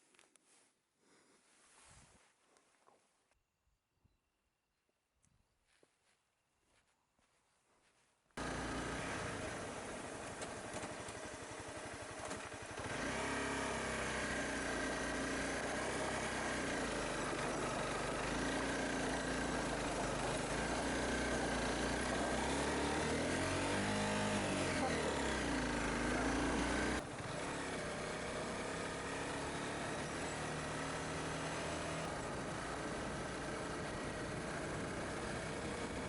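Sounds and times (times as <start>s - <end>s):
motorcycle engine running: 8.4s - 36.0s
wind and road noise: 8.4s - 36.0s.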